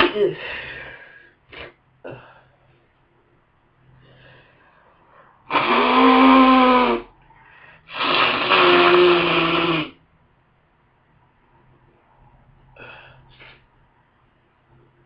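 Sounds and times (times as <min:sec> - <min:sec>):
honking nose blows: 0:05.4 - 0:07.2, 0:07.9 - 0:10.0.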